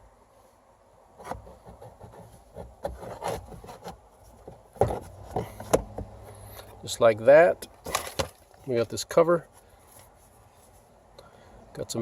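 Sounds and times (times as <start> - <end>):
filter scraping in plastic housing: 1.2 - 6.8.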